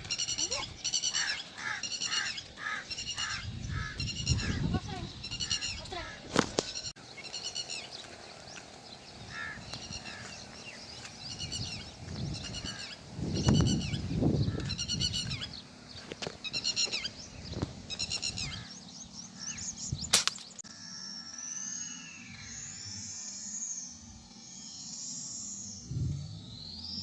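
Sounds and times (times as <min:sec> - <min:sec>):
sharp crack: 0:20.1 - 0:20.6.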